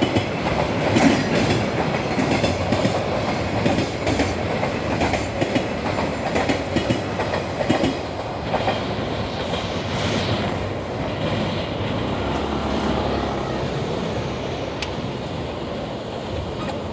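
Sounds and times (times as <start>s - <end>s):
train wheels clacking over rail joints: 0.0s - 12.5s
freight train rumble: 0.0s - 16.9s.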